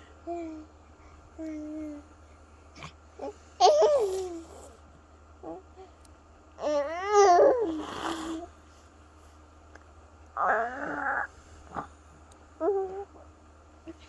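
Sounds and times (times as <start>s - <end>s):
baby babbling: 12.6s - 13.3s.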